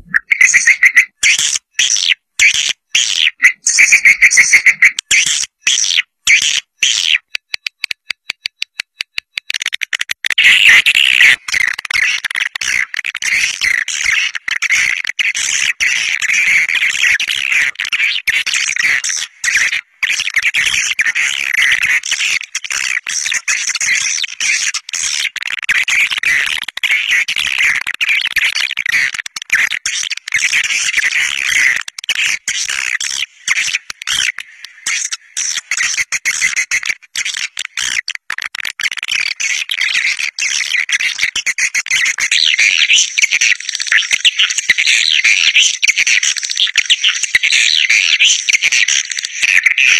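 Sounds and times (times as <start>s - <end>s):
high-pitched bird twittering: 0.0s - 7.6s
rapid clicks: 7.3s - 10.4s.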